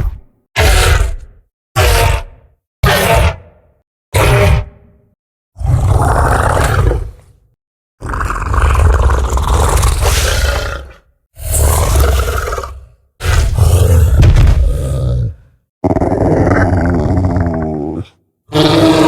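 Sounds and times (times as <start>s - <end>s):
deep loud dinosaur roars: 8.0s - 19.0s.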